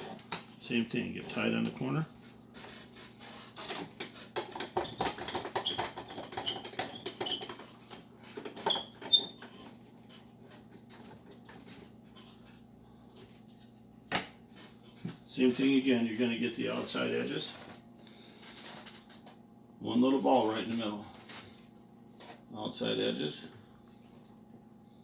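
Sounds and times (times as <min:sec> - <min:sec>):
wood squeaking on wood: 0:03.6 - 0:11.9
faint steady hum: 0:07.6 - 0:25.0.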